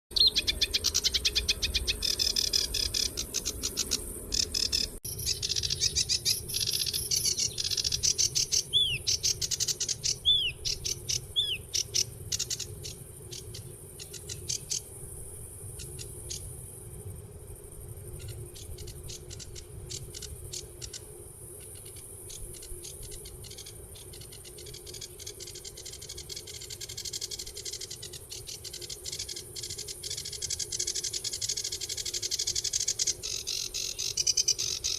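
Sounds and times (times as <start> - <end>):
arched bird whistles: 0.1 - 12.6
birds chirping: 0.1 - 14.8.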